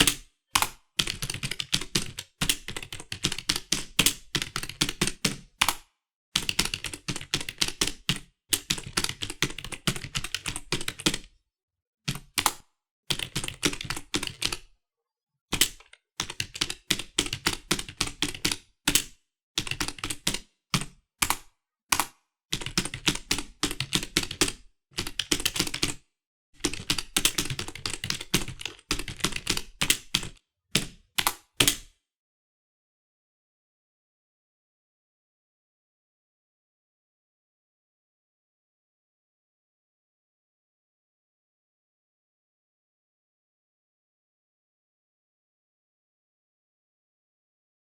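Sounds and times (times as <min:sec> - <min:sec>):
keyboard typing: 0:00.0 - 0:05.8, 0:06.4 - 0:11.2, 0:12.1 - 0:14.7, 0:15.6 - 0:26.0, 0:26.6 - 0:31.8.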